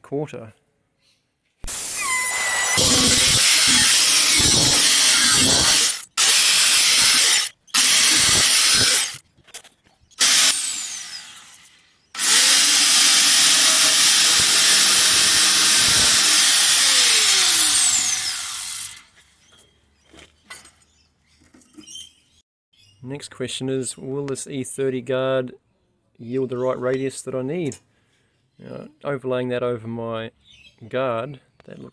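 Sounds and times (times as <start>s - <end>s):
power tool cutting sheet steel: 1.7s - 9.2s, 10.2s - 19.1s.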